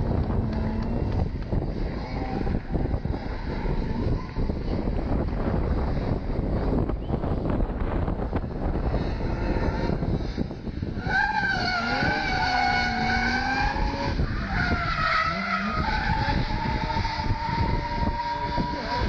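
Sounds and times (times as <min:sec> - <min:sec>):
car tyres squealing: 0:00.0 - 0:07.5, 0:08.6 - 0:19.0
low rumble: 0:00.0 - 0:19.0.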